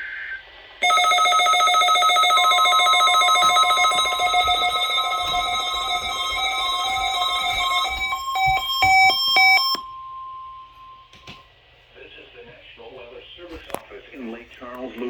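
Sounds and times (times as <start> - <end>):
warning alarm tone: 0.8 - 11.4.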